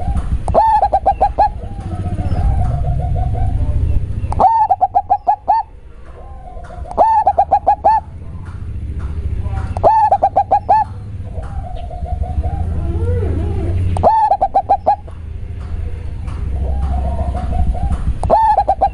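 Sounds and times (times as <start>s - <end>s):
dove cooing: 0.0s - 8.8s, 9.6s - 18.9s.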